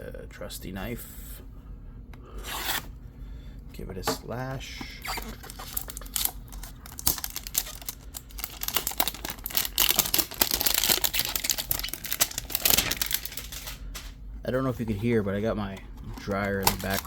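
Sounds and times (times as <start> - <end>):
clothes dryer humming: 3.0 - 17.0
cardboard and plastic crinkling: 4.9 - 17.0.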